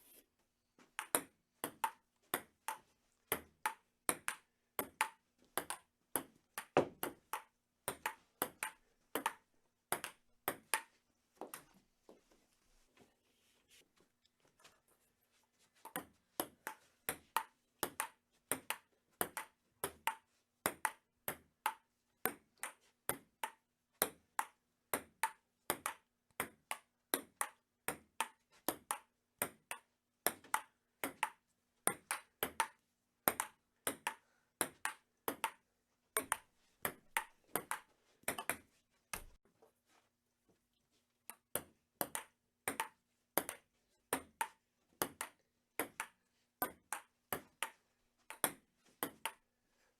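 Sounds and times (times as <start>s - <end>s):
ping-pong ball clicking: 42.0s - 43.6s.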